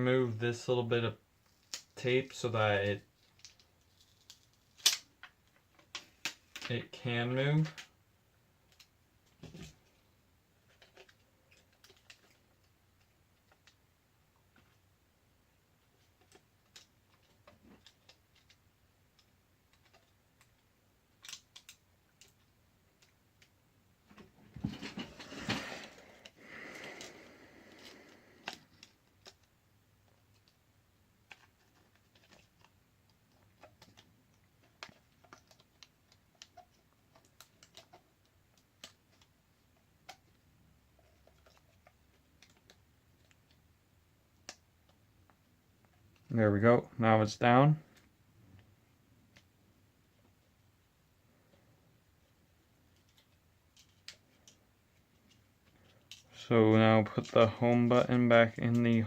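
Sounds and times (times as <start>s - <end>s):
scraping and rustling: 24.0s - 29.4s.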